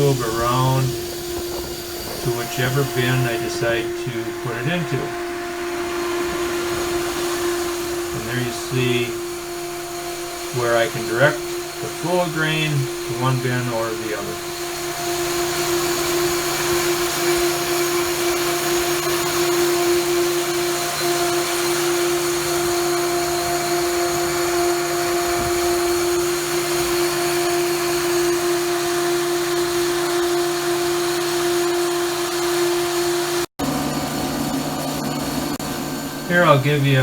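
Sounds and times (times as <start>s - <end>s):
corn blown through tube: 0.0s - 29.3s
grain blower humming: 0.0s - 37.0s.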